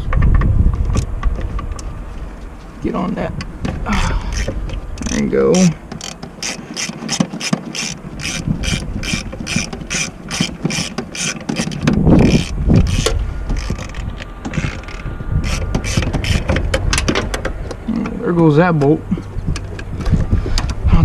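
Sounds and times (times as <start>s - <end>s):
socket ratchet clicking: 4.3s - 17.5s.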